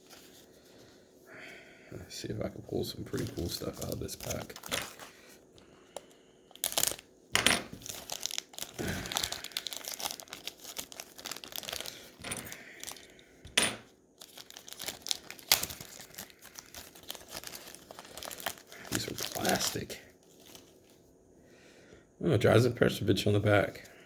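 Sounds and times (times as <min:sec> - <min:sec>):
wrapper crinkling and tearing: 0:03.0 - 0:05.3, 0:05.9 - 0:07.1, 0:07.7 - 0:13.2, 0:14.2 - 0:21.0.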